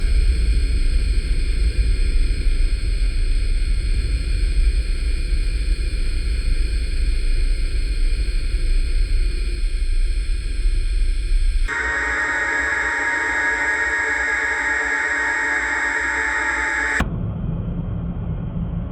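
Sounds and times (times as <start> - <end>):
drone propellers whining: 5.6 - 17.0.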